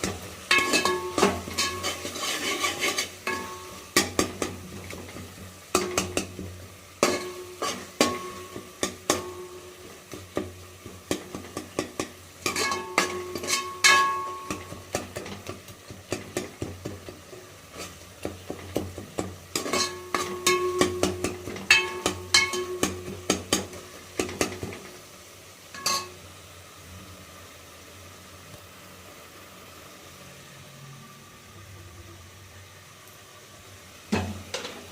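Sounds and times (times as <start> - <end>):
metal utensil scraping a pan: 0.0 - 24.9, 25.8 - 26.2, 34.1 - 34.9
light frying sizzle: 0.0 - 34.9.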